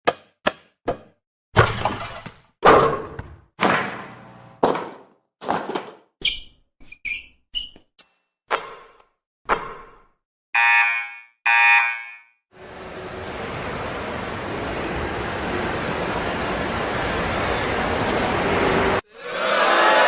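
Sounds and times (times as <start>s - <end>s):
sneakers squeaking on court: 6.2s - 8.0s.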